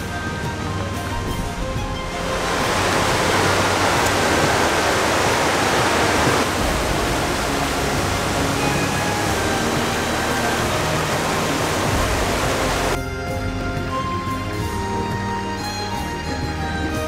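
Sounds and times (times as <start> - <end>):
waterfall rushing: 0.0 - 13.0.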